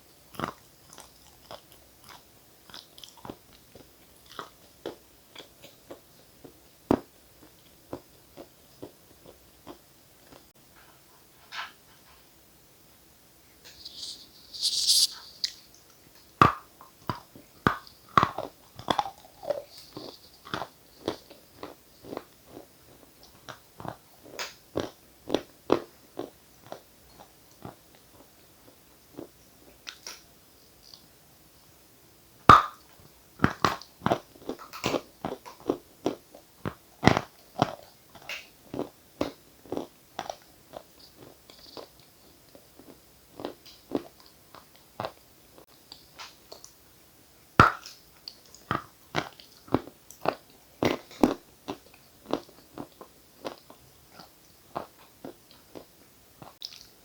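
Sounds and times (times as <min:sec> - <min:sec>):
chalk being bitten and chewed: 0:13.7 - 0:15.8, 0:17.7 - 0:22.7.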